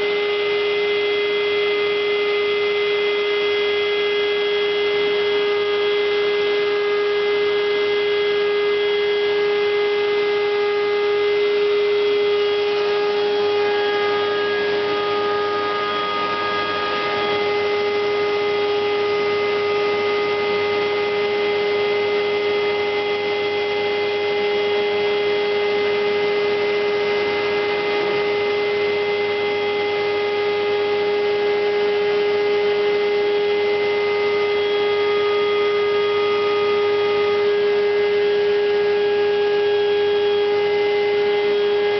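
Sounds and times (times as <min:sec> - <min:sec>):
cnc router whining: 0:00.0 - 0:41.9
higher machine tone: 0:10.4 - 0:32.2.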